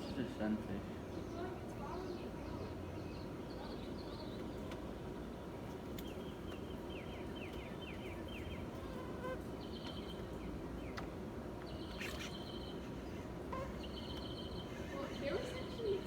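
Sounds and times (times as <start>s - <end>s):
small birds chirping: 5.9s - 16.0s.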